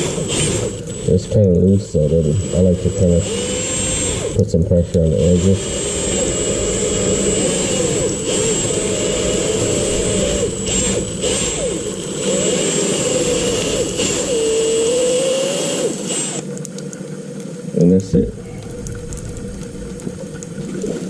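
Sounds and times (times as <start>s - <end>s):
power drill motor whine: 0.0s - 1.3s, 2.1s - 16.5s
tap water running: 0.0s - 21.0s.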